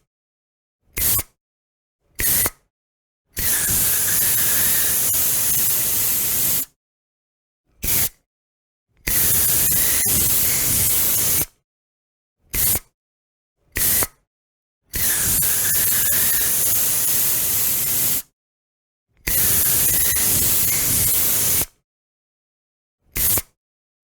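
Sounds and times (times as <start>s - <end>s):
spray hissing from a nozzle: 3.5s - 6.6s, 9.4s - 11.4s, 19.6s - 21.6s.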